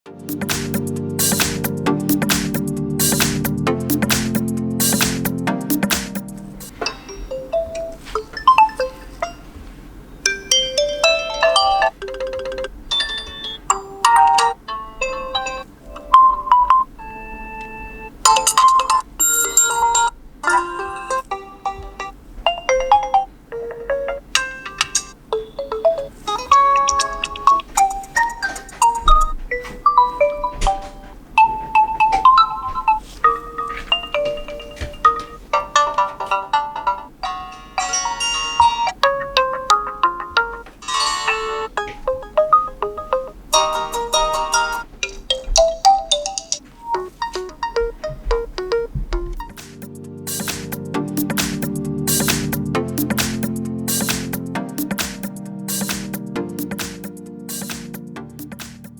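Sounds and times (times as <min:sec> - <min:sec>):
chiming phone alarm melodies: 0:10.3 - 0:35.4, 0:37.2 - 0:49.6.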